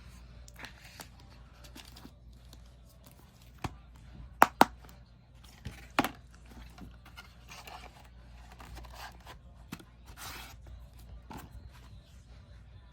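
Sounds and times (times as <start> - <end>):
paper and plastic rustling: 0.5 - 3.6, 5.4 - 12.0
plastic case click: 4.4 - 4.8.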